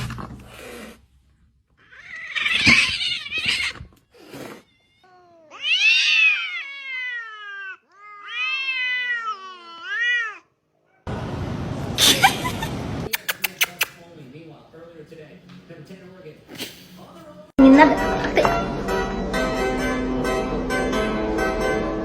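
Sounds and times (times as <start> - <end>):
cat yowling: 1.8 - 10.5.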